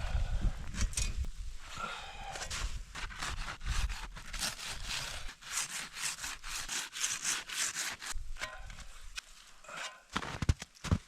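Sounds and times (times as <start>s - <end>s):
wind rumble on microphone: 0.0s - 4.0s.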